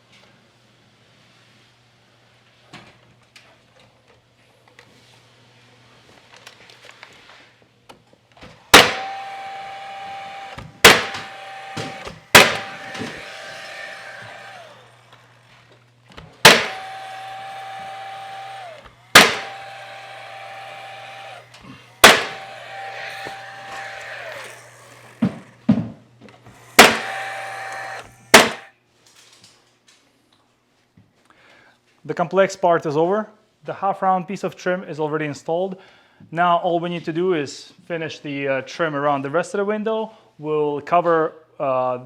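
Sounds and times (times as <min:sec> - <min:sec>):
nail gun motor whirring: 0:08.3 - 0:28.7
nail gun firing: 0:08.7 - 0:15.2, 0:16.1 - 0:25.6, 0:26.5 - 0:28.7.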